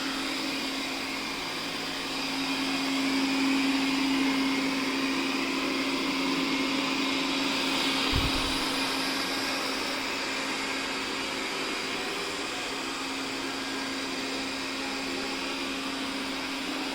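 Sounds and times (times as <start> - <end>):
robot vacuum motor hum: 0.0 - 16.9.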